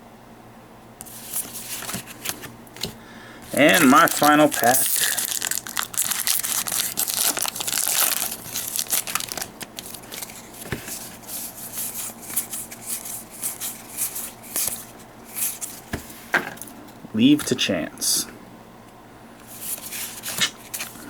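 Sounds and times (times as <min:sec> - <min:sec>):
cards ticking and rustling: 0:01.0 - 0:16.0
foil wrapper tearing and crinkling: 0:03.5 - 0:10.6.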